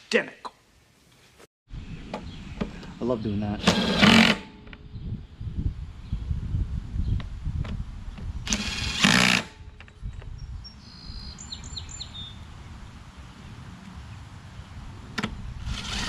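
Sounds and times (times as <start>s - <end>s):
bird chirps: 10.0s - 12.5s
recoil starter whirring: 15.2s - 16.0s.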